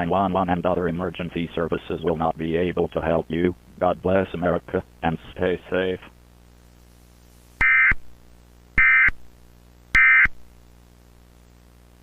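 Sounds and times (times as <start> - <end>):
digital data tone blasts: 7.6 - 8.0, 8.8 - 9.2, 10.0 - 10.3.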